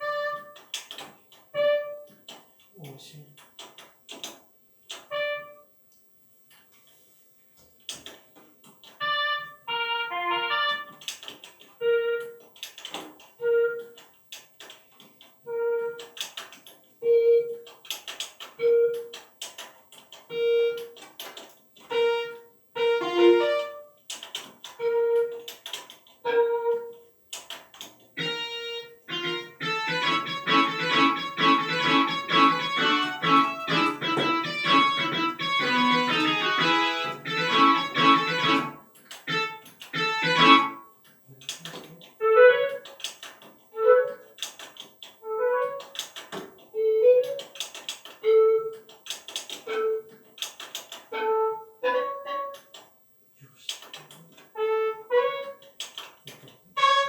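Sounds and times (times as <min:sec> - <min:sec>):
electronic piano music: 0:21.9 - 0:23.8, 0:28.2 - 0:40.9.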